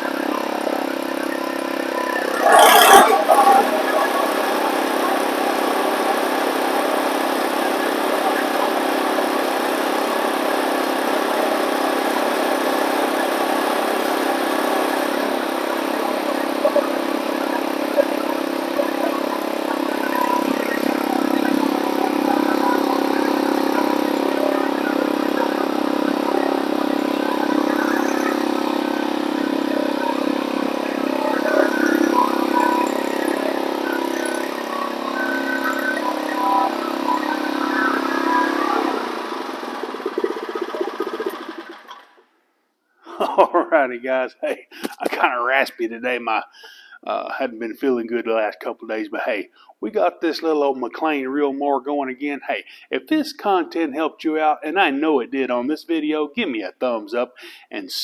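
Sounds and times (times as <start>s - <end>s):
reel mower engine running: 0.0s - 42.2s.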